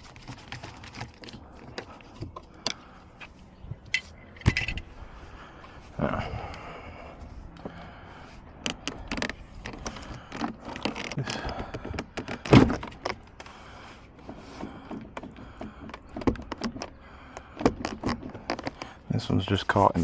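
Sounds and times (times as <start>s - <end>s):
plastic clicks and knocks: 14.8s - 19.0s.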